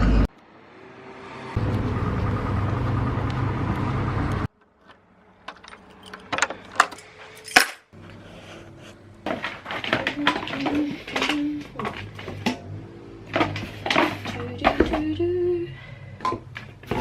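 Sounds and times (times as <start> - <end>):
engine-like rumble: 0.0 - 4.6.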